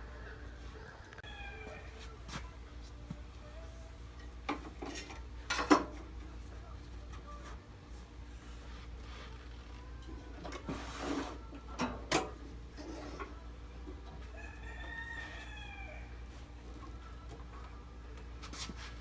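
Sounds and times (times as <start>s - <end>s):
rooster crowing: 1.2s - 2.0s, 14.2s - 16.3s.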